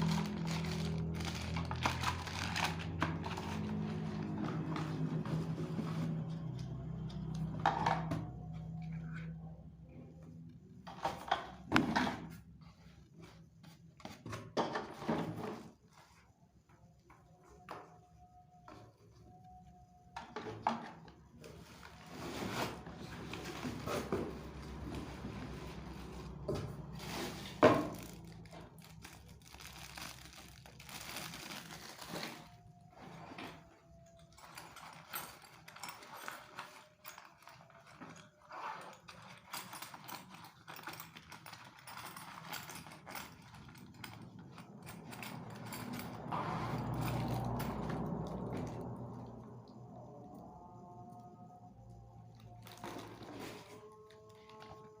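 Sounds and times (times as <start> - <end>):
rustling and handling: 0.0 - 7.4, 21.4 - 49.0.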